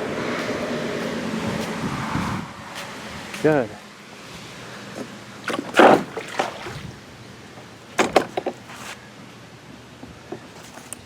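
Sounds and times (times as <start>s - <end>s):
sharp knocks and clatters: 8.0s - 8.6s.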